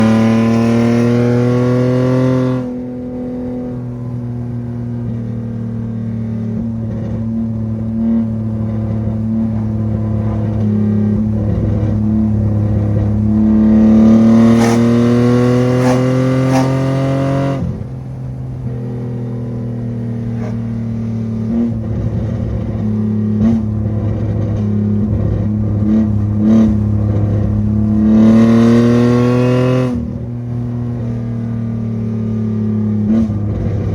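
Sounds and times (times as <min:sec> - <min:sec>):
car engine revving: 0:00.0 - 0:33.9
exhaust crackles and pops: 0:20.2 - 0:28.0.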